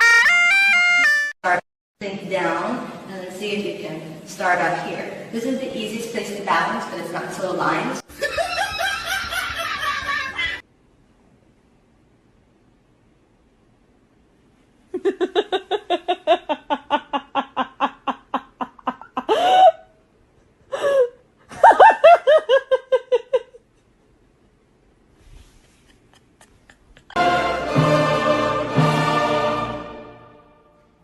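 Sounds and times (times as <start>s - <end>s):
person laughing hard: 8.1s - 10.6s, 15.0s - 19.9s, 20.5s - 23.7s, 25.7s - 27.2s
person crying out: 19.3s - 19.9s
orchestral music: 27.1s - 31.0s.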